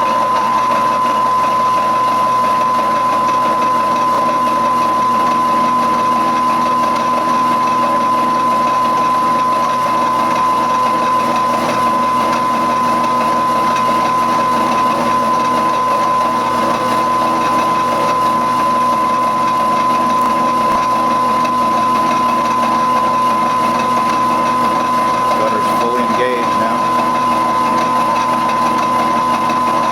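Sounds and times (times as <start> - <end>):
milling saw cutting steel: 19.4 - 29.9.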